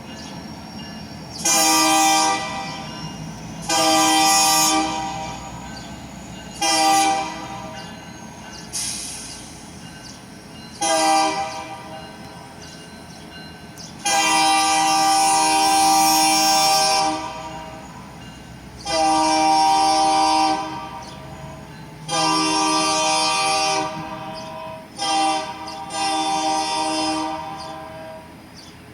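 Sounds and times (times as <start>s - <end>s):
running train: 0.0s - 28.9s
locomotive air horn blasts: 1.4s - 2.9s, 3.6s - 5.6s, 6.6s - 7.8s, 10.8s - 12.0s, 14.0s - 18.0s, 18.8s - 28.4s.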